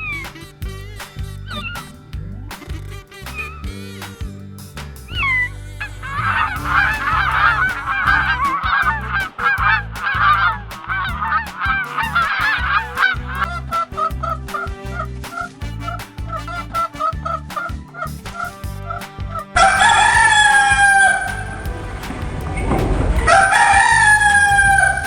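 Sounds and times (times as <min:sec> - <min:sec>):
geese honking: 0:05.2 - 0:10.5.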